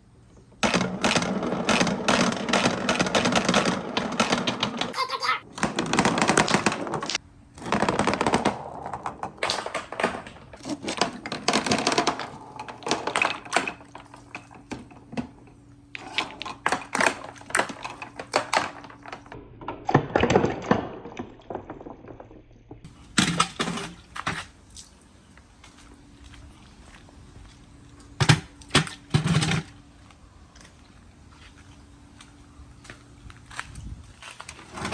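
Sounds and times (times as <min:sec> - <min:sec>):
marbles clacking on wooden run: 0:00.6 - 0:05.0, 0:05.6 - 0:15.4.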